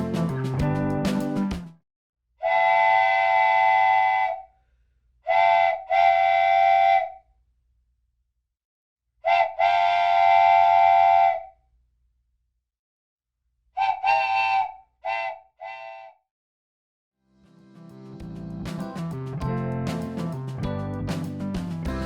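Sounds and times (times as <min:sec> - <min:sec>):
train whistle blasts: 0:02.4 - 0:04.4, 0:05.3 - 0:07.2, 0:09.3 - 0:11.5, 0:13.8 - 0:16.2.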